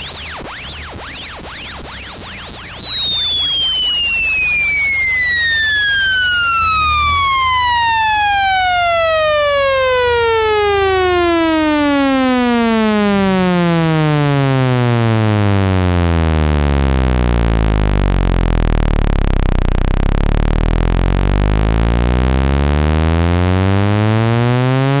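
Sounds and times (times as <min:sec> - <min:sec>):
buzzy synthesized tone sweeping down: 0:00.0 - 0:25.0.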